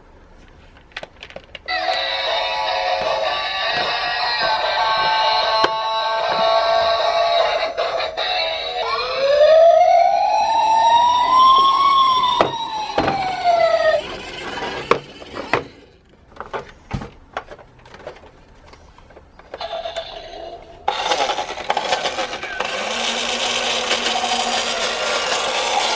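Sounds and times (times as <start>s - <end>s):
police siren wail: 1.7s - 7.9s, 8.8s - 14.8s, 21.0s - 25.9s.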